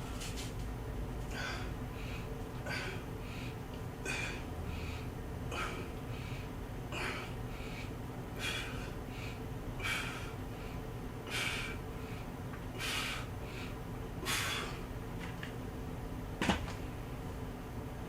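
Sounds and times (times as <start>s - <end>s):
person breathing hard: 1.3s - 14.9s.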